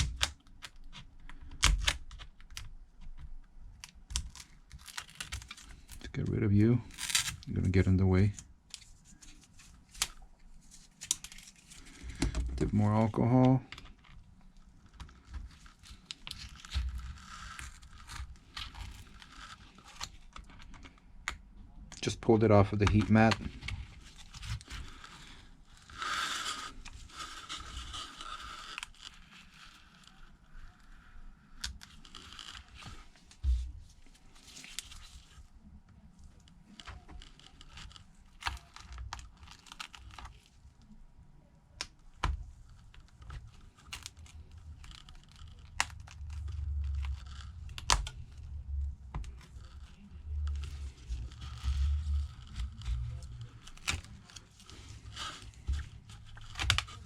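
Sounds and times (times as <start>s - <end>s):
adhesive tearing and peeling: 3.8s - 6.0s, 6.8s - 7.5s, 14.8s - 21.0s, 22.7s - 33.1s, 42.7s - 57.0s.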